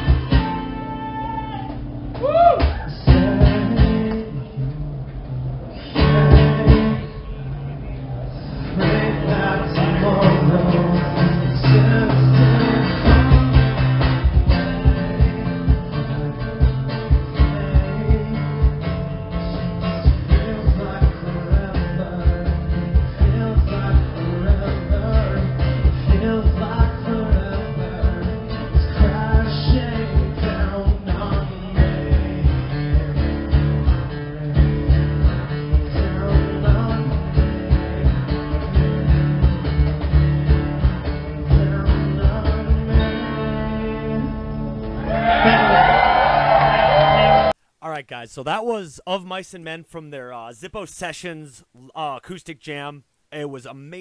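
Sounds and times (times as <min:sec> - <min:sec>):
steady drum beat: 0:00.0 - 0:00.9, 0:11.2 - 0:32.6
acoustic guitars: 0:00.0 - 0:49.7
person singing: 0:08.7 - 0:13.8.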